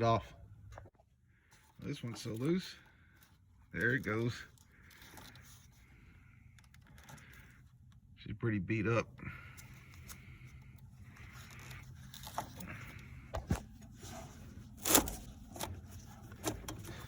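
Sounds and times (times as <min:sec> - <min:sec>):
car battery scraping and knocking: 0:11.3 - 0:17.0.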